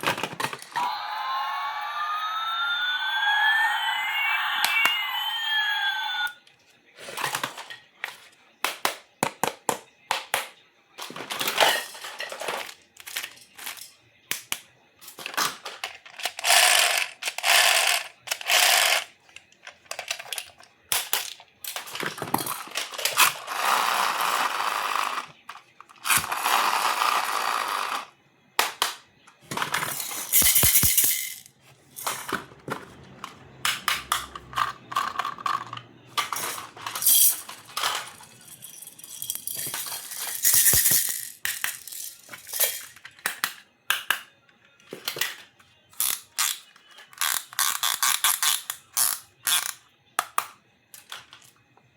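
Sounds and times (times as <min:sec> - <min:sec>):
plastic toy pieces clicking: 0:11.5 - 0:29.0, 0:29.6 - 0:32.4, 0:33.6 - 0:44.2, 0:46.0 - 0:51.5.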